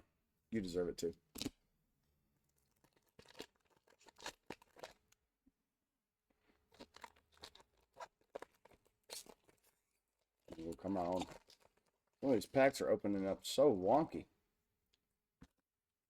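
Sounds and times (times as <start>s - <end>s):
foil wrapper tearing and crinkling: 2.6s - 5.0s, 6.7s - 9.8s, 10.4s - 12.4s.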